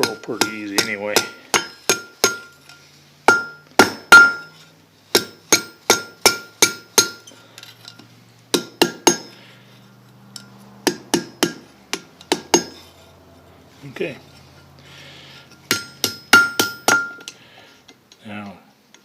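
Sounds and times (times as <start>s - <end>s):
anvil ringing: 0.0s - 4.6s, 8.5s - 9.4s, 15.7s - 17.4s
hammer striking steel on anvil: 0.0s - 7.3s, 8.5s - 9.4s, 10.3s - 12.9s, 15.6s - 17.4s.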